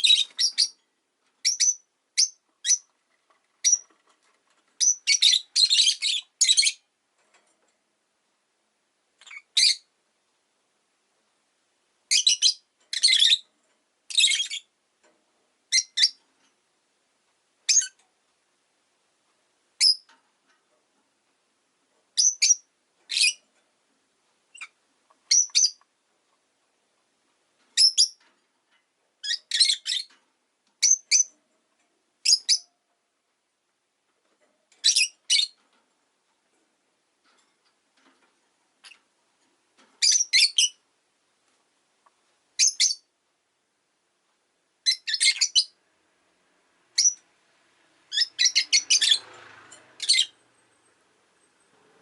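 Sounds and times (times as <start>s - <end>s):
lovebird chirping: 0.0s - 2.9s, 3.6s - 3.9s, 4.8s - 6.9s, 9.2s - 9.9s, 12.1s - 13.5s, 14.1s - 14.7s, 15.7s - 16.2s, 17.6s - 18.0s, 19.8s - 20.1s, 22.2s - 23.4s, 24.5s - 25.9s, 27.8s - 28.2s, 29.2s - 30.1s, 30.8s - 31.4s, 32.2s - 32.8s, 34.8s - 35.6s, 40.0s - 40.8s, 42.6s - 43.1s, 44.8s - 45.8s, 46.9s - 47.2s, 48.1s - 49.2s, 50.0s - 51.8s.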